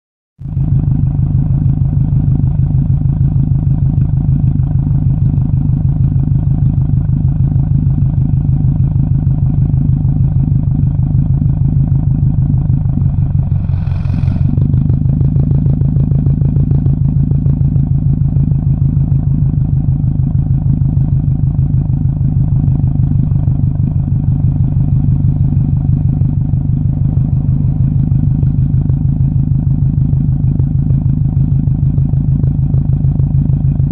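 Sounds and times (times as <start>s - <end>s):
brief hiss: 13.0s - 14.6s.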